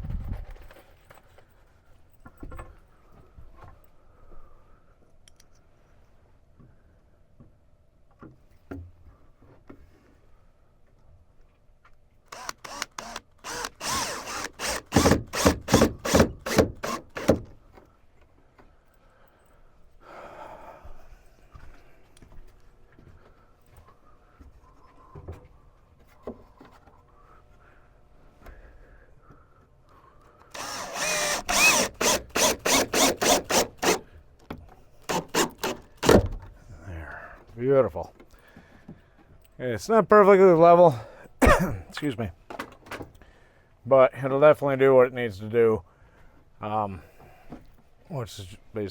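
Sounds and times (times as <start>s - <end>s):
power drill driving screw into wood: 12.3s - 17.5s, 30.5s - 34.0s, 35.0s - 36.3s.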